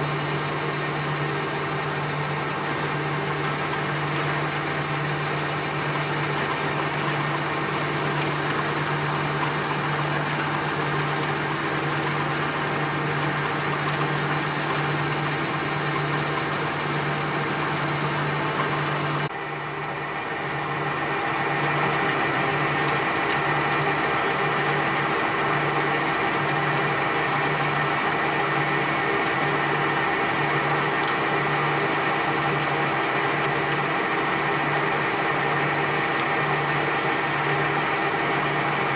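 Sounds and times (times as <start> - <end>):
machinery humming and hissing: 0.0 - 38.9.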